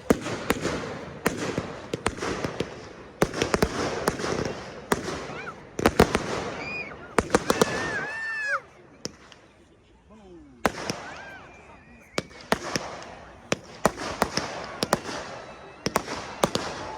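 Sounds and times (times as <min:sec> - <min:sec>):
fireworks bangs: 0:00.0 - 0:09.6, 0:10.6 - 0:16.9
fireworks crackling: 0:00.0 - 0:09.7, 0:10.6 - 0:16.9.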